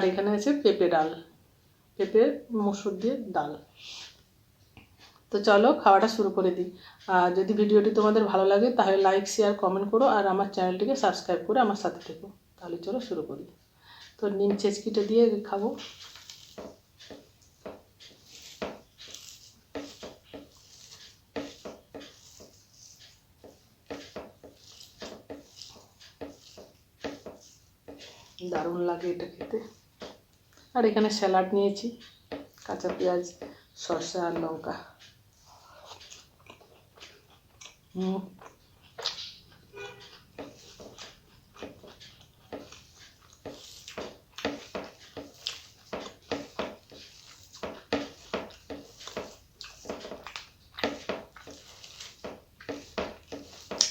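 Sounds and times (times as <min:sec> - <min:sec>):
person chewing food: 0:15.7 - 0:28.5, 0:32.0 - 0:32.7, 0:34.9 - 0:53.9
mouth clicks and smacks: 0:35.6 - 0:53.9.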